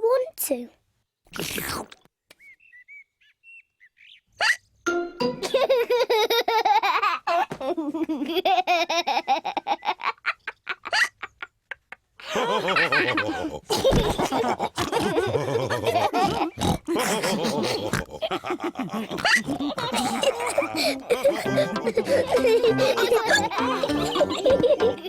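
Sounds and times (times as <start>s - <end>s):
cartoon characters laughing: 5.2s - 11.6s, 12.2s - 25.0s.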